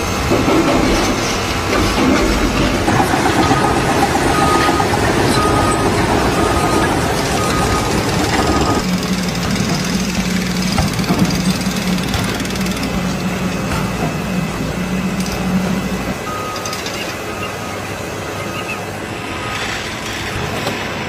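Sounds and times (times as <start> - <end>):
engine humming and rumbling: 0.0 - 21.0
short repeated beeps: 16.3 - 16.9.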